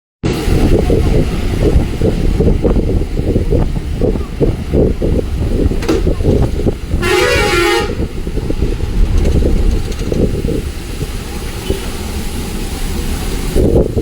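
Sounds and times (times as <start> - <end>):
bus engine rumble: 0.2 - 14.0
heavy rain: 0.3 - 14.0
vehicle horn honking: 6.9 - 8.2.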